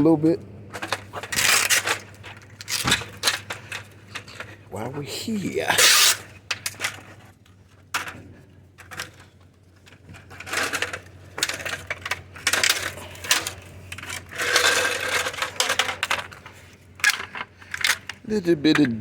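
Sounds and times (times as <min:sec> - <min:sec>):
screen scraping: 0:00.8 - 0:07.4, 0:10.1 - 0:18.1.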